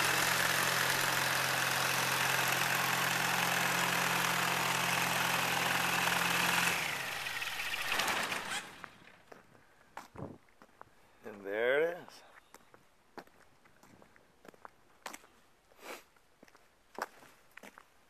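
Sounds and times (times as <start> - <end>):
propeller winding down: 0.0 - 9.2.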